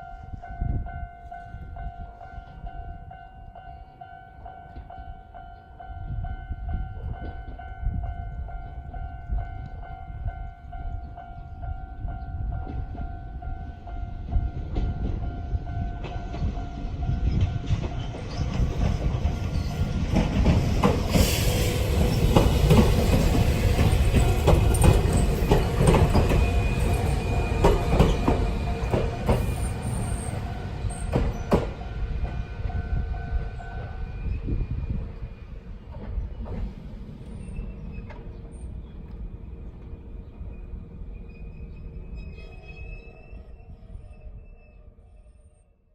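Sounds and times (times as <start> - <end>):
train wheels clattering over rail joints: 17.2 - 31.9.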